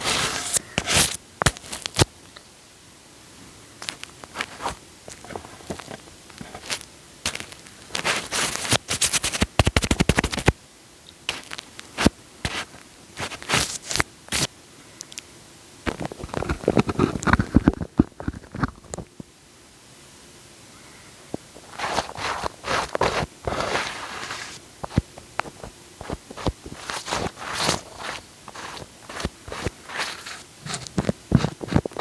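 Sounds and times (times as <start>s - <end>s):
wet sticky clicks and crackles: 11.2s - 15.2s.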